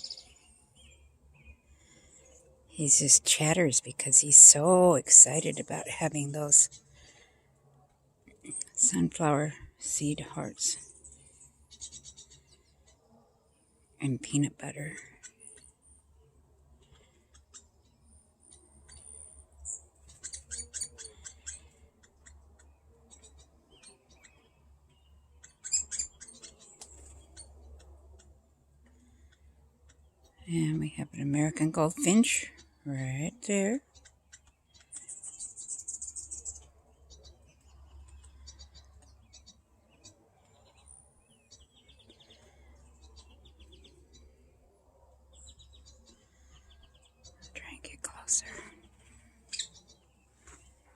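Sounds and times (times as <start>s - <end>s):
faint bird chirps: 0.0s - 2.7s, 10.8s - 32.9s, 33.8s - 50.9s
young woodpecker chattering: 18.6s - 28.3s, 49.5s - 50.0s.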